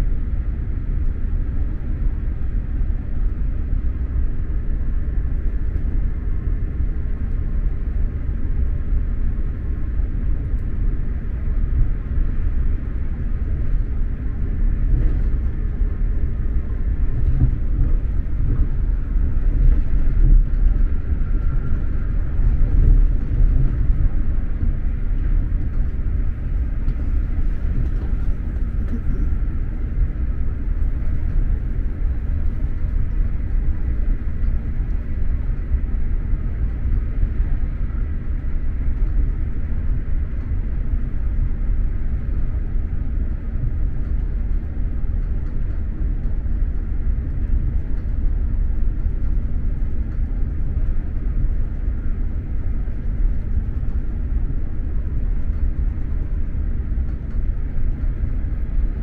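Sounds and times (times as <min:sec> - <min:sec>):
train wheels rumbling on track: 0:00.0 - 0:59.0.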